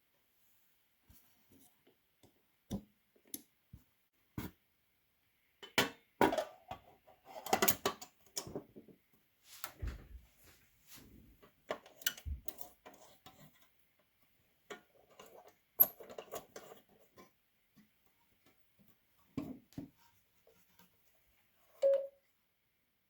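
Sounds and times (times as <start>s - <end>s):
short clear beep: 21.8s - 22.2s.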